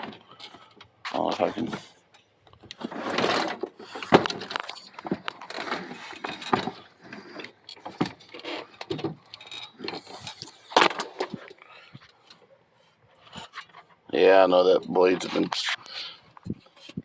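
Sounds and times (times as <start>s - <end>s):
push mower clunks and rattles: 2.6s - 11.6s
scraping: 2.6s - 17.0s.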